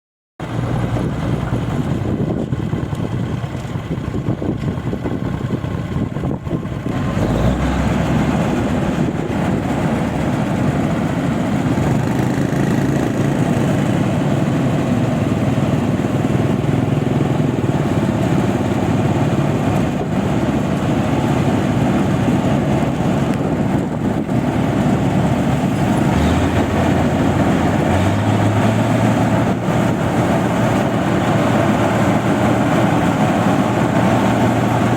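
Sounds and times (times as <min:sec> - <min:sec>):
milling machine engine running: 0:05.4 - 0:34.9.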